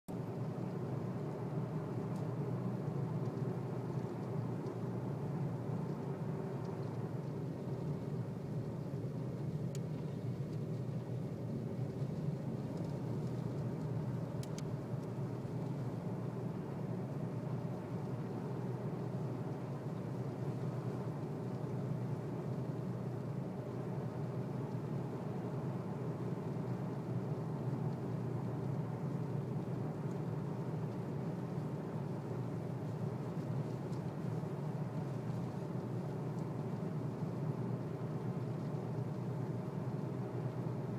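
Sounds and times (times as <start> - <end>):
car engine and tyre rumble: 0.0 - 40.9
faint clicks: 2.0 - 4.9, 5.8 - 16.0, 26.4 - 40.9.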